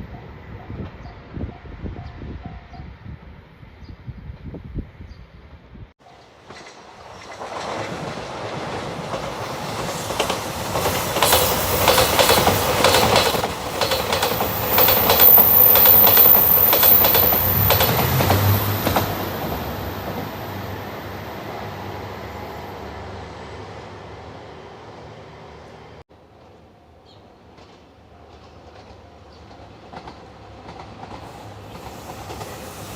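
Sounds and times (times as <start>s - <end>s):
train wheels clicking over rail joints: 6.2s - 20.5s.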